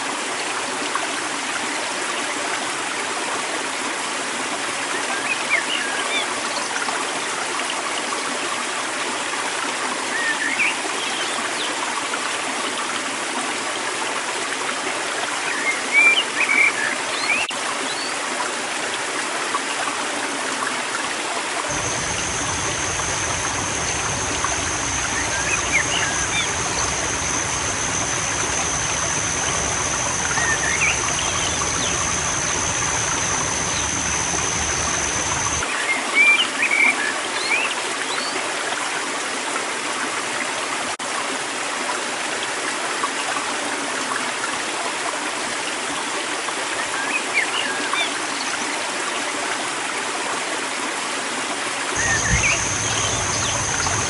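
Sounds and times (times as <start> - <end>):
river running: 0.4 - 36.0, 51.7 - 54.0
high-pitched whine: 21.7 - 35.6, 52.0 - 54.0
low rumble: 21.7 - 35.6
small birds chirping: 21.7 - 35.6, 52.0 - 54.0.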